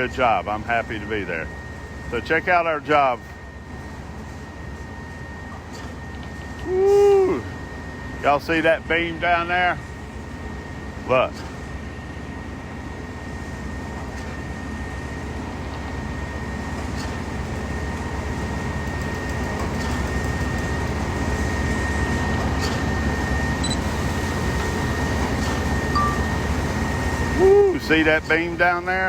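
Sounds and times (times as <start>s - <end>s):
high whine: 23.0s - 27.8s.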